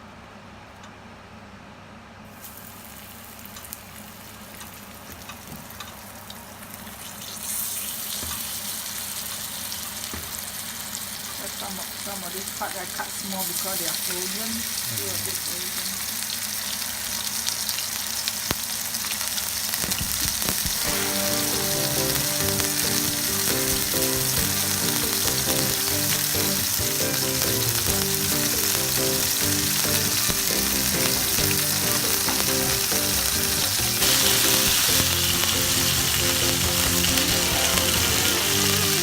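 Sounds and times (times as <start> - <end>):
fish sizzling in hot oil: 2.3 - 39.0
background music: 20.5 - 39.0.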